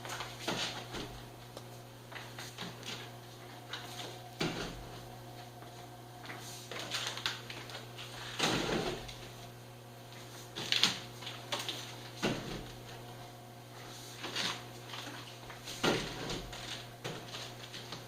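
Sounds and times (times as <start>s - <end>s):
plastic wrap crinkling: 6.6s - 8.4s.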